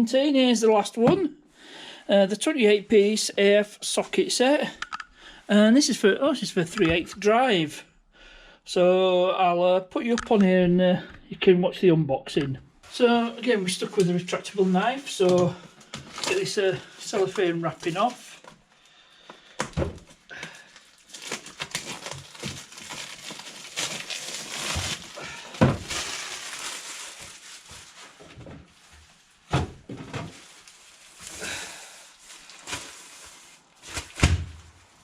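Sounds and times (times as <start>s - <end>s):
cellophane crinkling: 12.9s - 18.6s, 19.6s - 29.5s, 30.1s - 35.0s.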